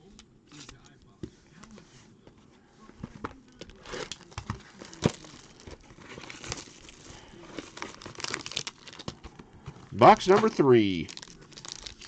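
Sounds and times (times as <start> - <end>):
packaging rustling and crinkling: 2.8 - 12.0.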